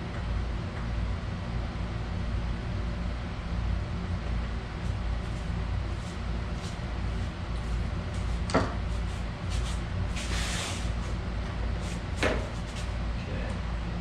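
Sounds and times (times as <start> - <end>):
steady low hum: 0.0 - 14.0
scraping rustle: 5.3 - 11.2.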